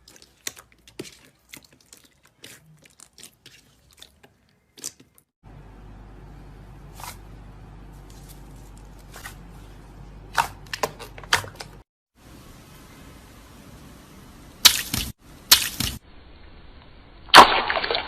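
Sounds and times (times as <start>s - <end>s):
steady low hum: 5.4s - 10.7s.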